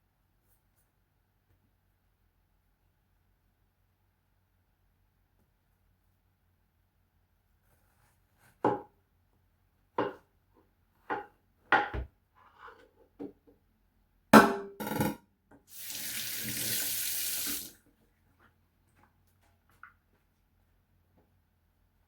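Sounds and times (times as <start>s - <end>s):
kitchen things knocking and clattering: 11.0s - 12.1s, 14.4s - 15.2s
kitchen tap running: 15.7s - 17.8s.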